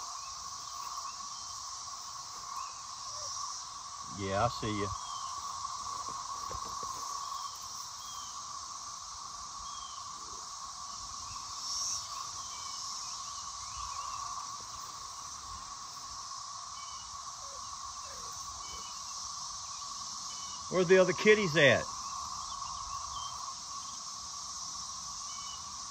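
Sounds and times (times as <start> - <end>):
cicadas droning chorus: 0.0 - 25.9
faint bird chirps: 9.6 - 10.4, 16.7 - 20.8, 25.2 - 25.7.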